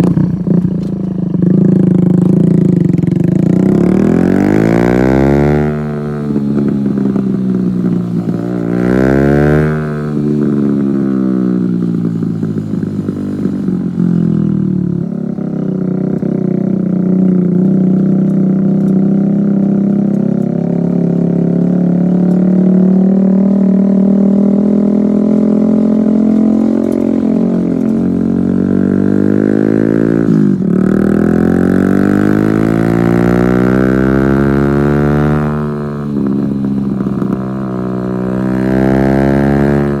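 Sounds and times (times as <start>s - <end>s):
motorcycle engine revving: 0.0s - 40.0s.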